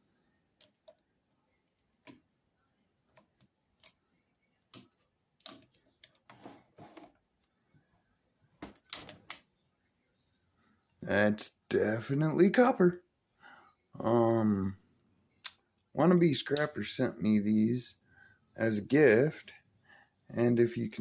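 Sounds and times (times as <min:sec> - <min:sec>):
faint clicks and knocks of parts handled: 0:00.4 - 0:09.6, 0:15.3 - 0:16.0.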